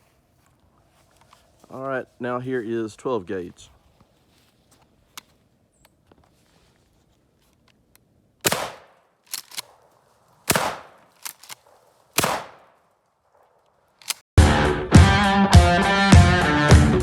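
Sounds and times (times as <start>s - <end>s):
shotgun shots: 8.4s - 14.2s.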